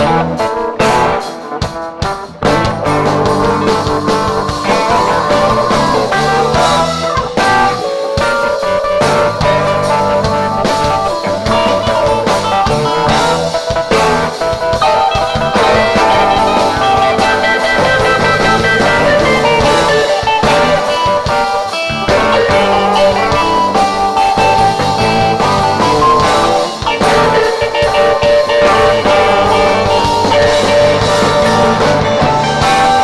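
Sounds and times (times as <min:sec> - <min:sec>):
bass guitar: 0:00.0 - 0:33.0
drum kit: 0:00.0 - 0:33.0
electric guitar lead: 0:00.0 - 0:33.0.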